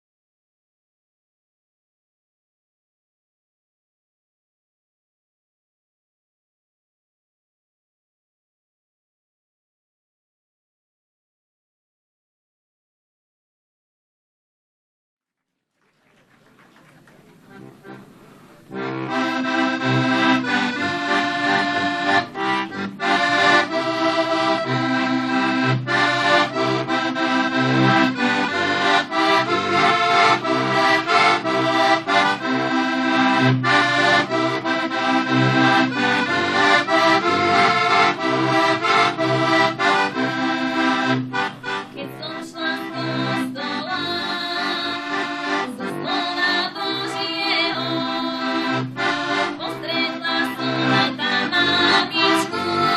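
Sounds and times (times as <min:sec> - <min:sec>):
button accordion folk tune: 0:17.4 - 0:52.9.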